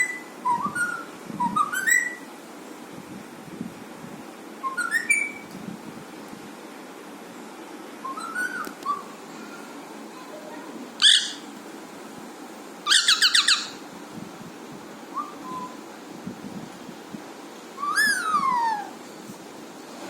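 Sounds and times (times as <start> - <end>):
faint bird whistle: 0.0 - 2.3, 4.6 - 5.4, 8.0 - 9.1, 15.1 - 15.8, 17.8 - 18.9
parakeet harsh calls: 11.0 - 11.5, 12.8 - 13.8, 17.8 - 18.9.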